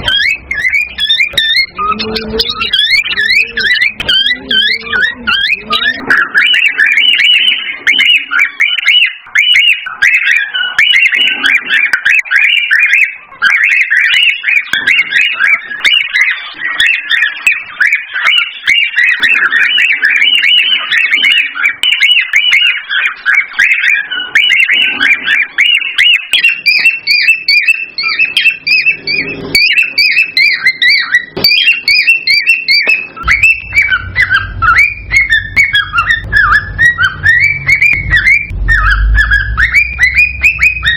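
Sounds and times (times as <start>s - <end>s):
cockatiels chirping and whistling: 0.0s - 40.9s
higher thinner chirping: 0.0s - 40.9s
low hum: 33.2s - 40.9s.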